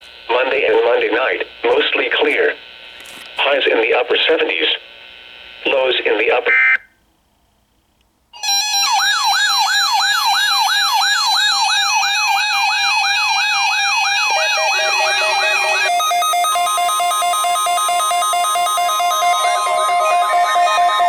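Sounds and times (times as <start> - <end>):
sweeping siren-like alarm tone: 8.4 - 21.0
pulsing electronic tones: 11.4 - 21.0
electronic beeping tones: 12.8 - 21.0.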